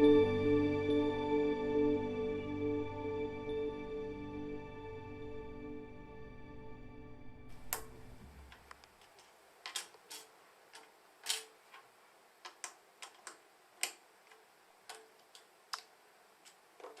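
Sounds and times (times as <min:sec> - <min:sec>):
plastic toy bricks clicking: 0:08.5 - 0:17.0.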